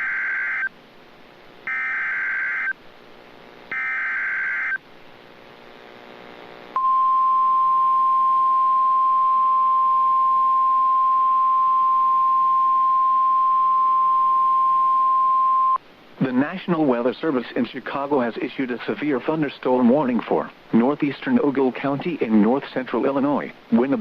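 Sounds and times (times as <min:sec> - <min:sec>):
screechy digital data bursts: 0:03.7 - 0:04.8
steady single-pitch attention tone: 0:06.8 - 0:15.8.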